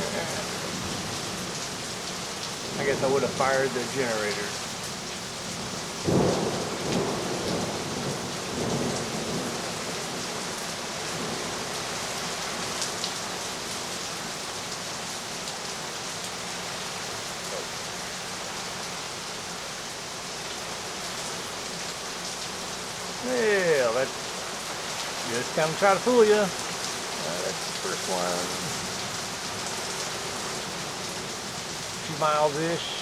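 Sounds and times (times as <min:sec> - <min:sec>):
heavy rain falling: 0:00.0 - 0:33.0
low rumble of thunder: 0:05.7 - 0:11.8.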